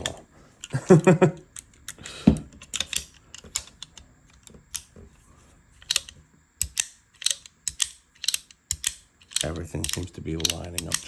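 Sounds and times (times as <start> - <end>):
revolver metal clicks: 1.4 - 5.0, 5.8 - 11.0.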